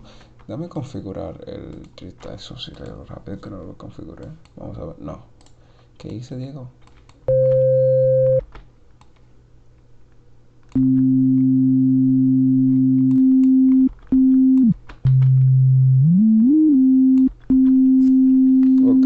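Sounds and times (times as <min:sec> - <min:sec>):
sine test tone: 0:07.3 - 0:08.4.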